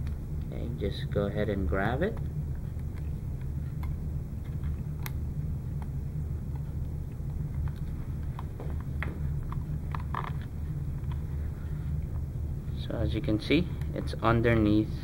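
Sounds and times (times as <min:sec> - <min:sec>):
steady low hum: 0:00.0 - 0:15.0
cable clicks and rustles: 0:02.1 - 0:11.3.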